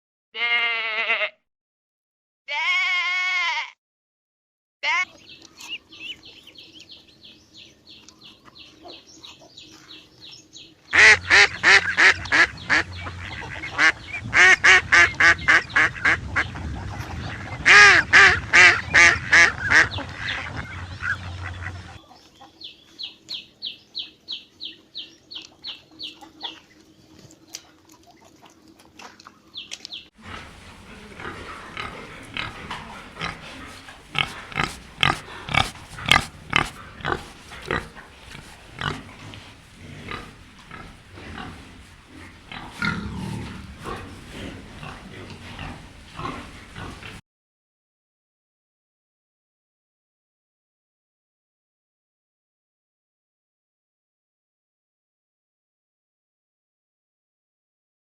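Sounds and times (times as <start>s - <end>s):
noisy animal sound: 4.8s - 47.2s
waterfowl honking: 10.9s - 16.5s, 17.4s - 22.0s, 30.2s - 39.4s.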